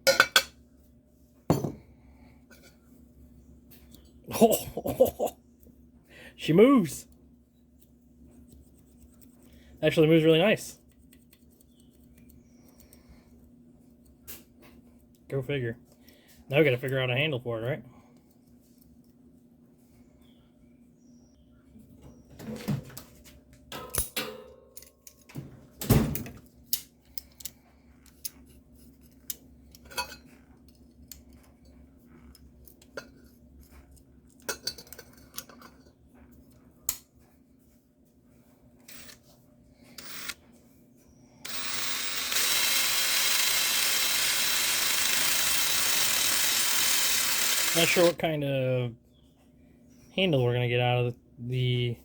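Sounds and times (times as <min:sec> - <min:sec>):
metal tools clinking: 0:00.1 - 0:00.5
power tool running: 0:38.9 - 0:39.2, 0:39.9 - 0:40.4, 0:41.4 - 0:48.2.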